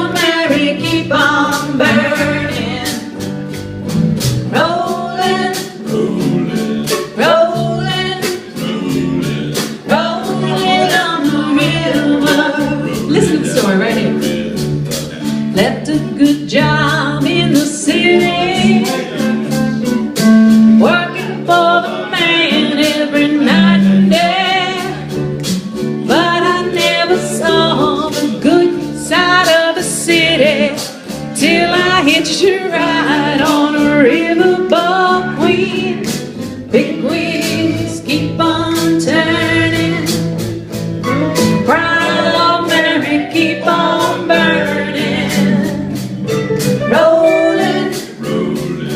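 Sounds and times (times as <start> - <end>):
guitar: 0.0 - 48.9
steady beat: 0.0 - 48.9
person singing: 4.5 - 25.3, 25.9 - 40.3, 41.1 - 48.9.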